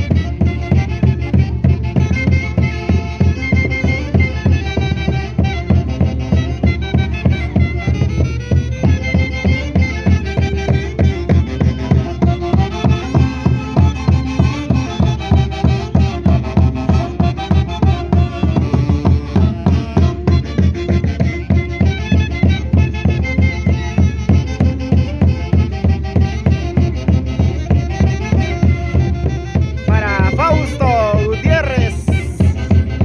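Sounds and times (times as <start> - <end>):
live folk orchestra music: 0.0 - 33.0
steady drum beat: 29.9 - 33.0.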